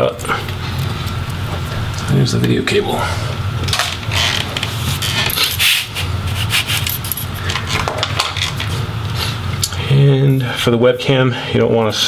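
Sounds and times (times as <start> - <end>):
steady low hum: 0.0 - 12.0
laptop parts rubbing and clicking: 3.7 - 8.8.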